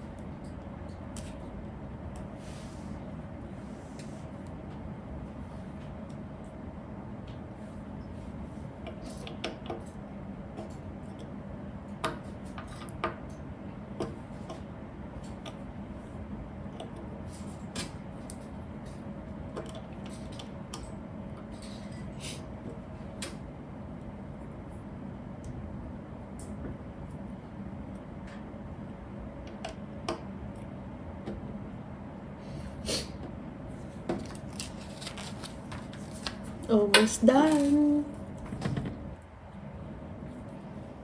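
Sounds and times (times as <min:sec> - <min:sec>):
steady background hum: 0:00.0 - 0:41.0.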